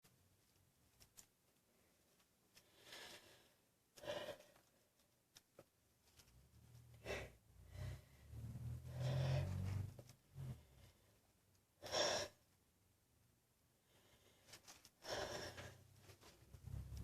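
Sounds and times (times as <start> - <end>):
woman breathing and sniffing: 2.5 - 4.8, 6.9 - 12.5, 13.8 - 17.0.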